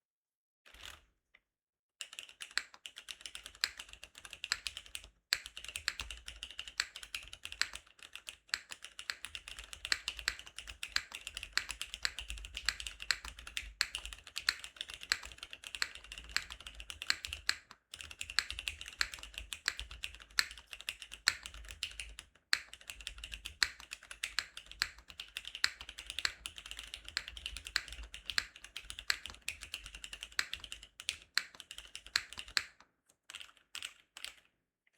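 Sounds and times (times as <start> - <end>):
mechanical keyboard typing: 2.0 - 34.5.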